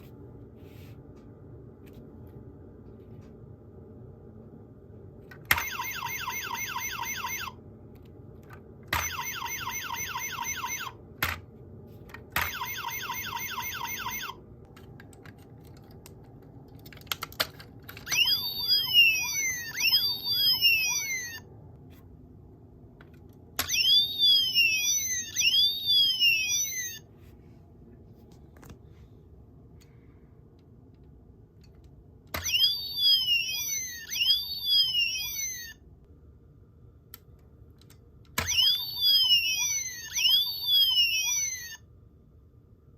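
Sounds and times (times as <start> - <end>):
electronic warble from toy speaker: 5.5 - 7.6, 8.9 - 11.0, 12.4 - 14.4, 18.0 - 21.5, 23.6 - 27.1, 32.3 - 35.8, 38.4 - 41.9
wailing siren swooping in pitch: 23.6 - 27.0.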